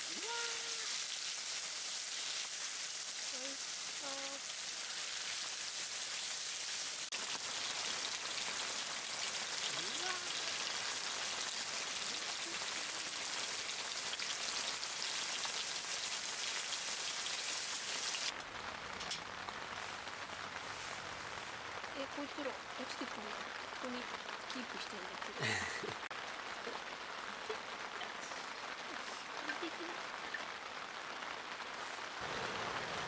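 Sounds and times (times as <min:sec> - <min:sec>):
steady rain falling: 0:00.0 - 0:33.0.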